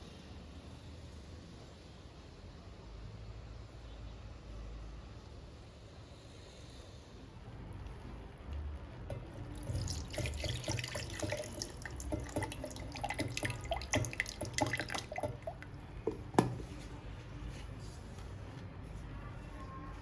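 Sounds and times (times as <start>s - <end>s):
water splashing in sink: 9.1s - 16.7s.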